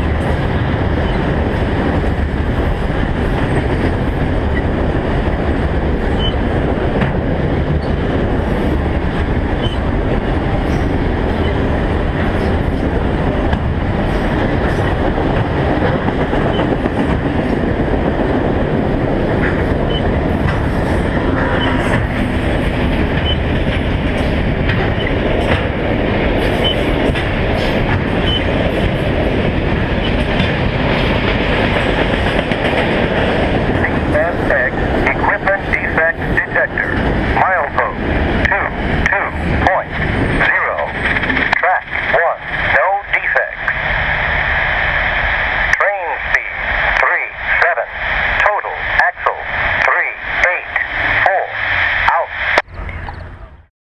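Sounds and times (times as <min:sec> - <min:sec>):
freight train wheels clattering: 0:00.0 - 0:35.2.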